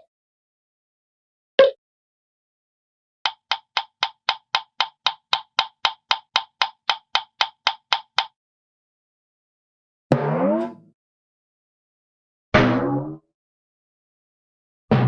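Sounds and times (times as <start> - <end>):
hollow wood-block knocks: 3.3 - 8.3.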